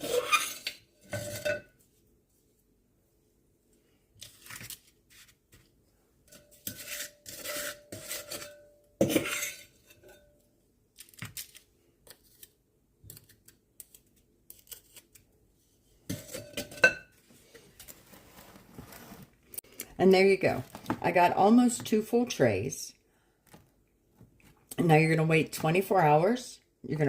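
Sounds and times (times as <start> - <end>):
scoop scraping gritty powder: 6.6 - 8.5.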